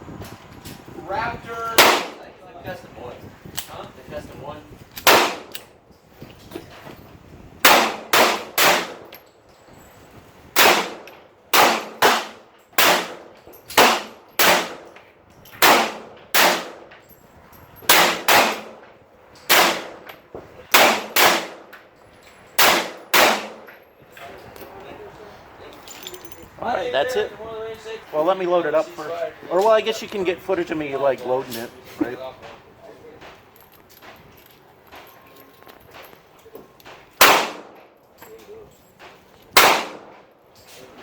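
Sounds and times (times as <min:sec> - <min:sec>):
gunshots with ringing tail: 0:01.8 - 0:02.2, 0:05.1 - 0:05.5, 0:07.6 - 0:09.0, 0:10.6 - 0:14.9, 0:15.6 - 0:16.8, 0:17.9 - 0:18.8, 0:19.5 - 0:20.0, 0:20.7 - 0:21.6, 0:22.6 - 0:23.7, 0:37.2 - 0:37.8, 0:39.6 - 0:40.2.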